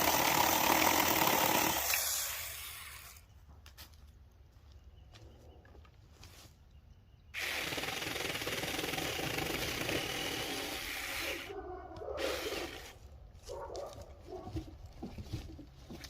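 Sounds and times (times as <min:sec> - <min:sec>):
chainsaw cutting wood: 0:00.0 - 0:03.2, 0:07.4 - 0:11.5, 0:12.2 - 0:13.0.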